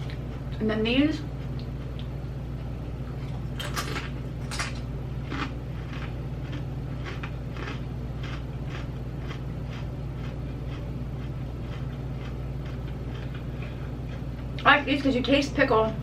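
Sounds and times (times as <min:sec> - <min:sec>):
chip crunching while chewed: 0:03.2 - 0:14.2.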